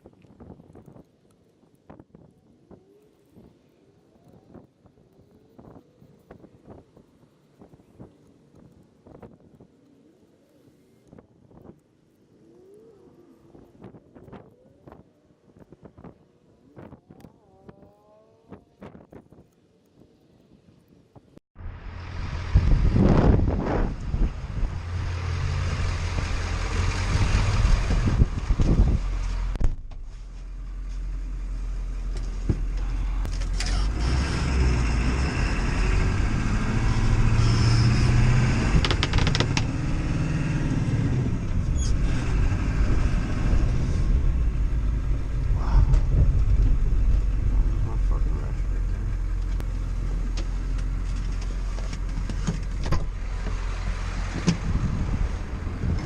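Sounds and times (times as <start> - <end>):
diesel engine running: 21.6 - 56.0.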